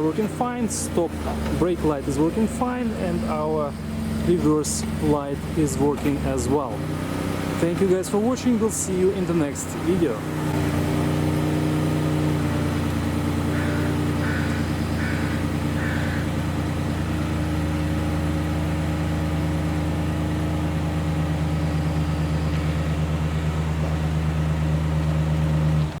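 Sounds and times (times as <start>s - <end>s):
van engine idling: 0.0s - 26.0s.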